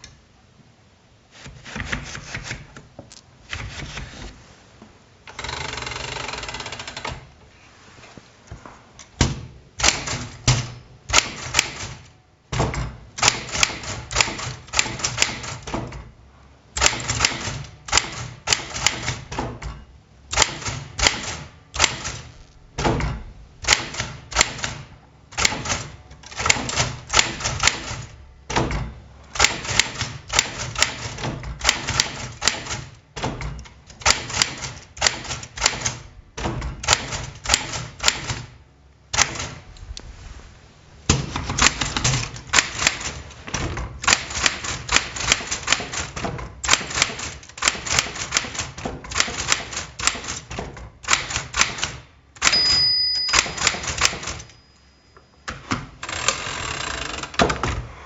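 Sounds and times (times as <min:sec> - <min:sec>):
manual typewriter key strikes: 0:09.2 - 0:16.1, 0:16.8 - 0:39.6, 0:41.4 - 0:54.6.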